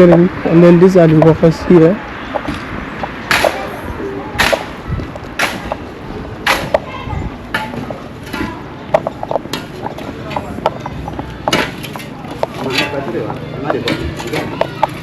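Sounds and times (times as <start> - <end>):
hammer striking: 3.3 - 3.8, 4.4 - 4.8, 5.4 - 6.9, 7.5 - 13.0.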